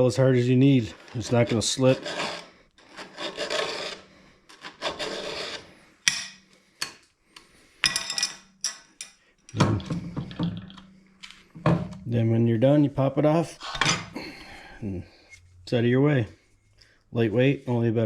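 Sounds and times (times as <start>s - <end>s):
hand file rasping on chain: 1.0s - 5.8s.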